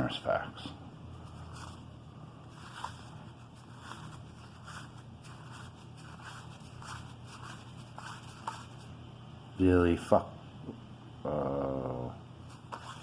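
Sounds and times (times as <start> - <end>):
steady low hum: 0.0 - 13.0
cards sliding with soft swishes: 1.2 - 8.9, 12.4 - 13.0.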